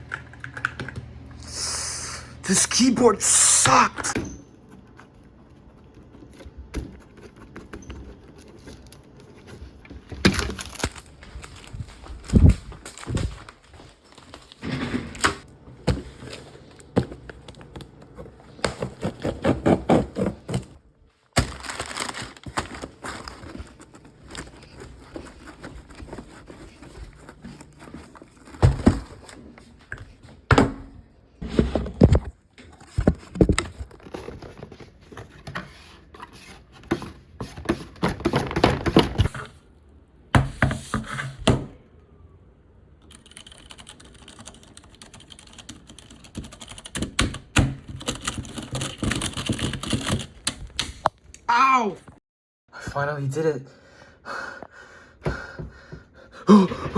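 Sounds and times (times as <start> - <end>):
packaging rustling: 10.0 - 14.7, 21.2 - 29.4
knocks and thuds on packaging: 28.5 - 29.2.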